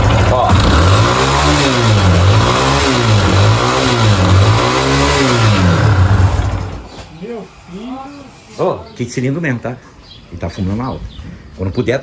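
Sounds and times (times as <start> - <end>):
motorcycle engine revving: 0.0 - 7.2.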